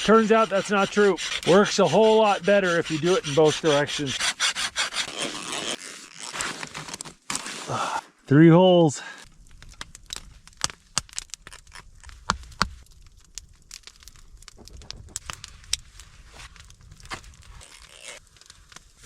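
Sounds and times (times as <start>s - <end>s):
low rumble: 12.8s - 17.6s.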